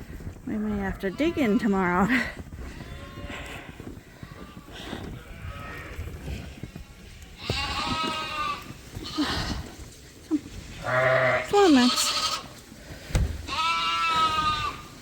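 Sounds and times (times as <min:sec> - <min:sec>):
lambs bleating: 0:02.7 - 0:06.0, 0:07.4 - 0:09.7, 0:10.8 - 0:12.6, 0:13.5 - 0:15.0.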